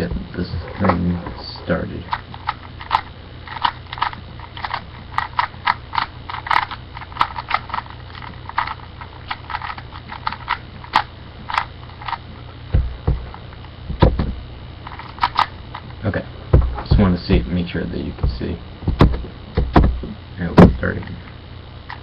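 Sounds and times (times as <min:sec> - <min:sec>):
puzzle cube layers clicking: 0:02.1 - 0:12.2, 0:14.9 - 0:15.8
dull low knocks: 0:12.7 - 0:14.4, 0:16.5 - 0:17.5, 0:18.2 - 0:20.8.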